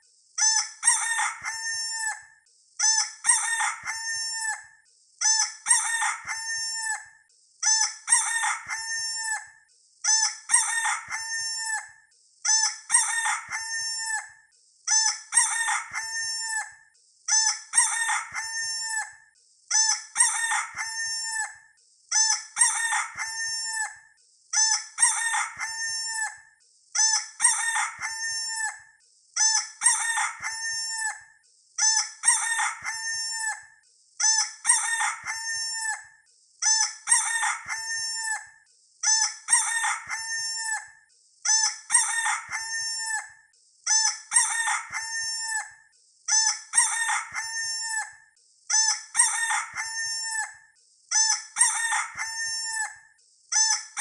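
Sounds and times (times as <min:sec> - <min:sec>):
rooster crowing: 0:00.9 - 0:02.2, 0:03.3 - 0:04.6, 0:05.7 - 0:07.0, 0:08.1 - 0:09.5, 0:10.5 - 0:11.9, 0:12.9 - 0:14.3, 0:15.4 - 0:16.7, 0:17.8 - 0:19.2, 0:20.2 - 0:21.6, 0:22.6 - 0:24.0, 0:25.0 - 0:26.4, 0:27.4 - 0:28.8, 0:29.8 - 0:31.2, 0:32.2 - 0:33.6, 0:34.6 - 0:36.0, 0:37.1 - 0:38.4, 0:39.5 - 0:40.9, 0:42.0 - 0:43.3, 0:44.3 - 0:45.7, 0:46.8 - 0:48.1, 0:49.2 - 0:50.5, 0:51.6 - 0:53.0.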